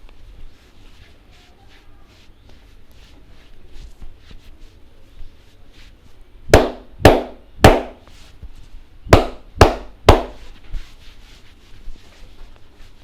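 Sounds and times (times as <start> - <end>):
hands slapping a head: 6.5 - 8.1, 9.1 - 10.6.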